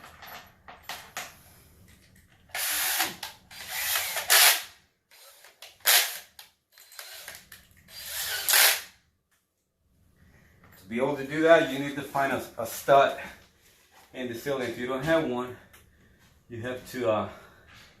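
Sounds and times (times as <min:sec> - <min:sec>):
power drill driving screws: 0:02.5 - 0:08.9.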